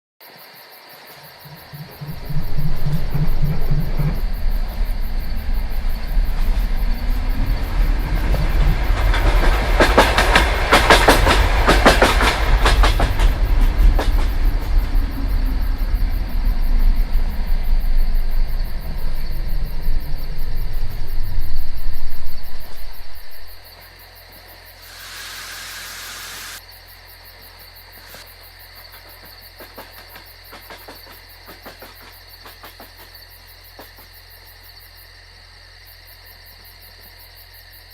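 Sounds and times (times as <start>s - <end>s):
diesel train rumbling: 1.4s - 23.6s
wheels clattering over rail joints: 1.6s - 23.6s, 28.9s - 33.2s
hiss: 24.7s - 26.7s.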